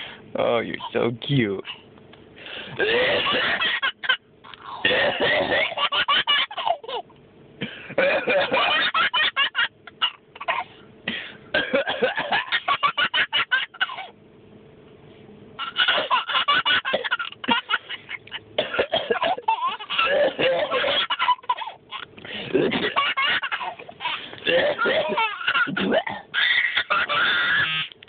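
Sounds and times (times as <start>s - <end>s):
adult coughing: 2.8s - 3.9s, 4.8s - 5.9s, 7.6s - 9.0s, 10.4s - 12.6s, 18.6s - 21.7s, 22.3s - 23.7s, 24.4s - 26.3s
baby laughing: 3.0s - 4.8s, 5.5s - 7.1s, 8.3s - 10.7s, 12.1s - 14.1s, 15.6s - 18.4s, 19.1s - 28.0s.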